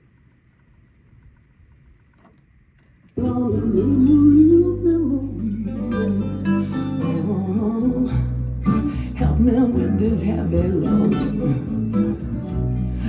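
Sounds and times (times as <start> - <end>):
faint low tape noise: 0.0 - 13.0
song with guitar and bass: 3.2 - 13.0.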